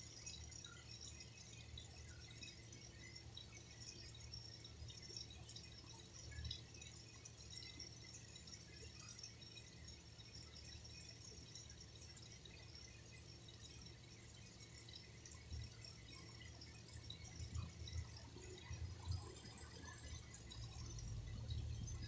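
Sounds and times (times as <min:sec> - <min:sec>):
water trickling and dripping: 0:00.2 - 0:22.0
faint low rumble: 0:20.4 - 0:22.0.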